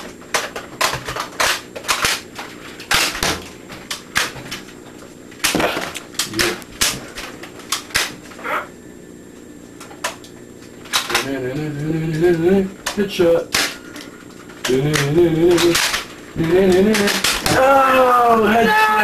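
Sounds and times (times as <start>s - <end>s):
toy blasters clicking and firing: 0.3s - 4.5s, 10.9s - 17.8s.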